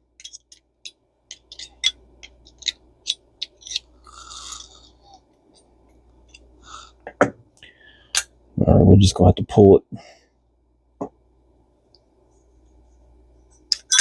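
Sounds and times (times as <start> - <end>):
small metal parts clicking: 0.2 - 4.9, 13.7 - 14.0.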